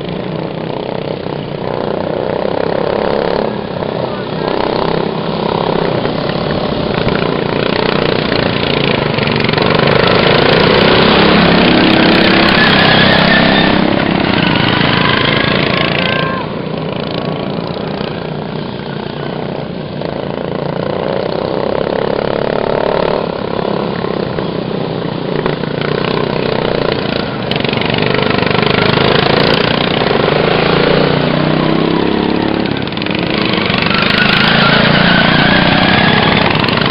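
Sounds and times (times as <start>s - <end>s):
racing lawn mower engines: 0.0s - 36.9s.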